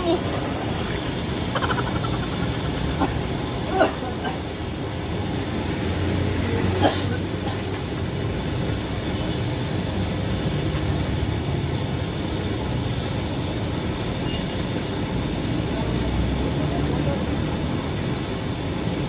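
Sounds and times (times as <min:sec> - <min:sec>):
low engine rumble: 0:00.0 - 0:05.7.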